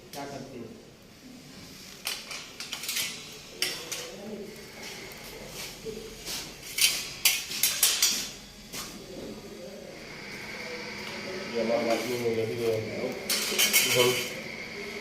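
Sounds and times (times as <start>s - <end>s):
tools clinking on metal tray: 13.3s - 14.3s.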